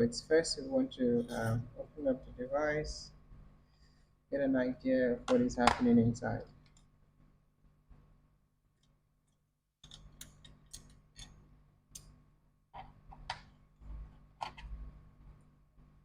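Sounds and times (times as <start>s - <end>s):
small tools clicking on laptop: 8.8s - 11.4s.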